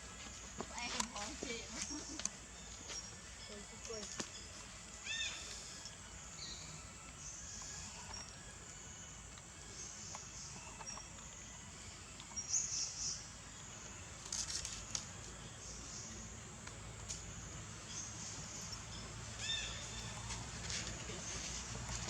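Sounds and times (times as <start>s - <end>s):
faint outdoor ambience: 0.0s - 22.0s.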